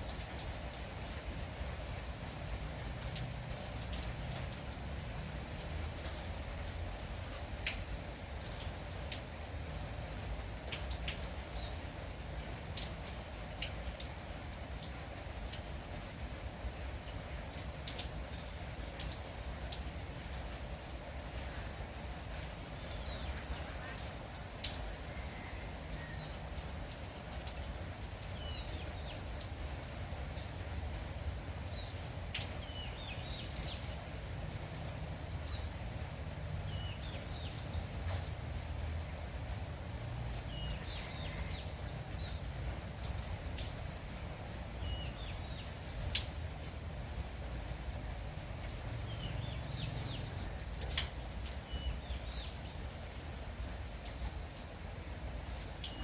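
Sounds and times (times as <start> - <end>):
light rain hissing: 0.0 - 56.0
songbird chirping: 17.0 - 36.0, 36.6 - 43.9, 44.7 - 54.0.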